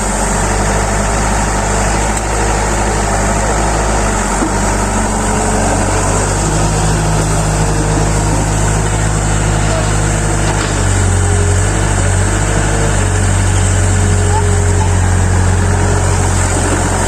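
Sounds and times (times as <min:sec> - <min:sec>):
excavator diesel engine: 0:00.0 - 0:17.0.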